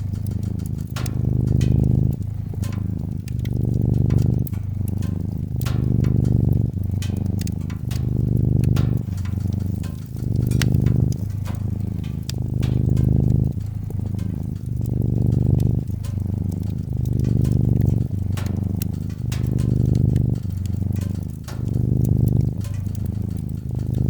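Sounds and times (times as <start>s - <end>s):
cat purring: 0.0s - 24.0s
wood fire crackling: 0.0s - 24.0s.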